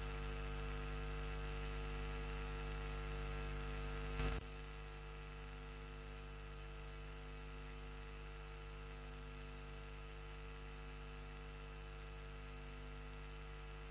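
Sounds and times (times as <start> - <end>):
electrical mains hum and buzz: 0.0 - 13.9
static hiss: 2.1 - 4.4.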